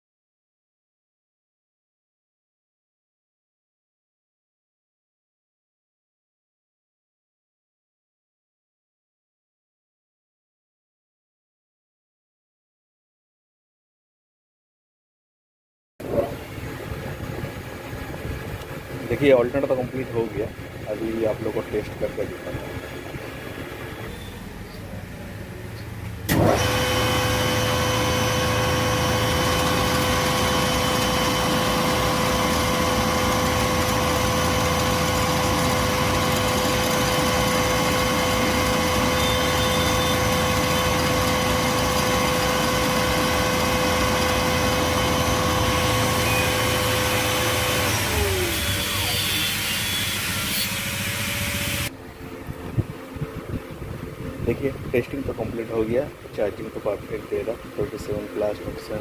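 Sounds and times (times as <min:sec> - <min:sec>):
alternator whining on test bench: 0:16.0 - 0:59.0.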